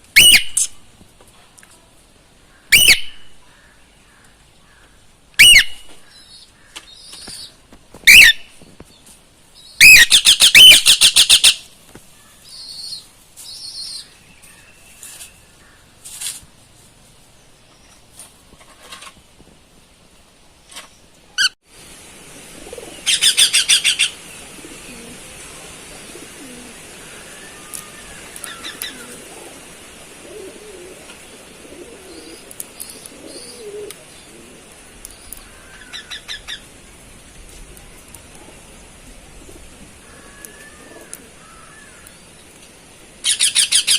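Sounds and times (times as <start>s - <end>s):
cockatiel calling and chirping: 0.2s - 0.7s, 2.7s - 3.2s, 5.4s - 5.9s, 7.4s - 8.4s, 9.8s - 11.6s.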